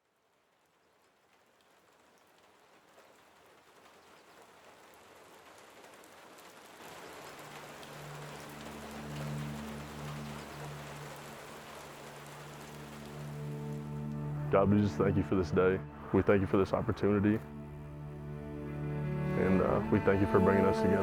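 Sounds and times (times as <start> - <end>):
steady rain falling: 0.0 - 21.0
low sustained music chord: 7.5 - 21.0.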